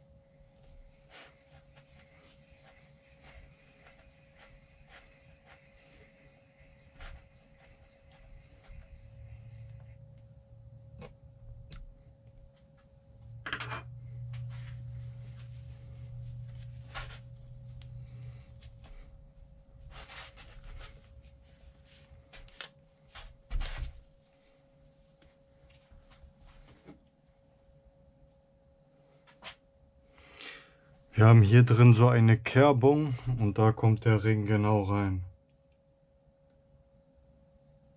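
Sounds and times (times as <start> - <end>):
low hum: 0.0 - 22.4.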